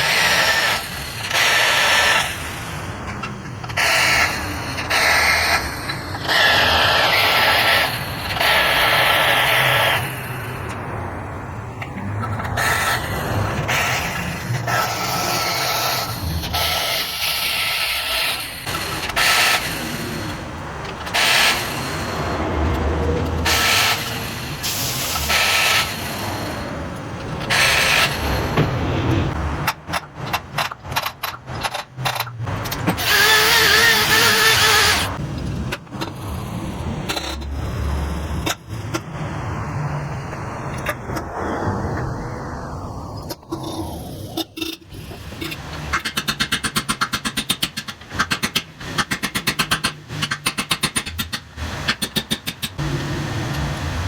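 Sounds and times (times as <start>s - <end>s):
workshop tool running: 11.8s - 39.0s, 44.9s - 54.0s
low hum: 18.5s - 25.3s.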